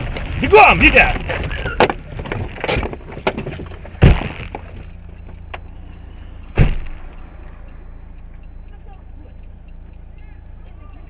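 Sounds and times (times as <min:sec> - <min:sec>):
sharp knocks and cracks: 0:00.0 - 0:05.7, 0:06.6 - 0:07.1
loud vehicle impact: 0:00.0 - 0:08.6
low road noise: 0:00.0 - 0:11.0.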